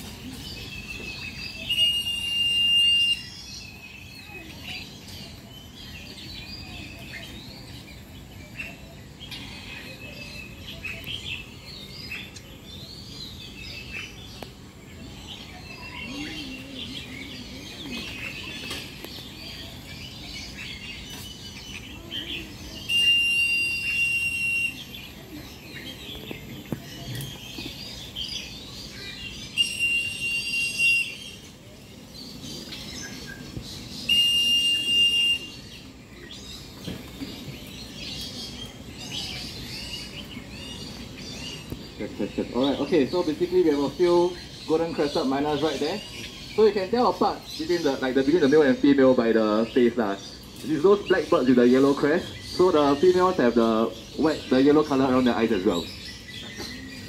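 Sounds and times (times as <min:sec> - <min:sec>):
songbirds chirping and calling: 0:00.0 - 0:57.0
long steady whistle: 0:01.7 - 0:03.3, 0:22.9 - 0:24.8, 0:29.6 - 0:31.2, 0:34.1 - 0:35.6.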